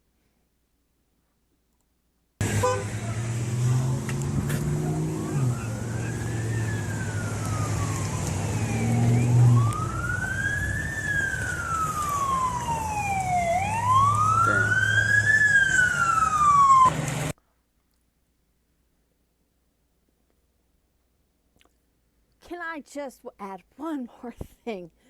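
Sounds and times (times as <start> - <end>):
emergency siren wailing: 2.4 - 17.3.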